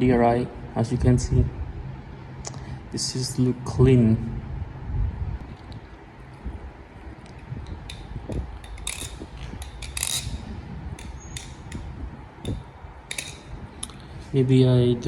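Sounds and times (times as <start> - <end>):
butterfly knife metallic clicks: 7.2 - 14.0.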